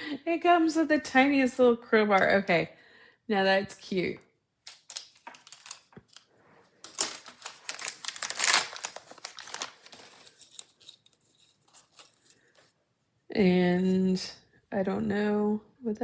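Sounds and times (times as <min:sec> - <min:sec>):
plastic wrapping crinkling and tearing: 0:04.7 - 0:12.6.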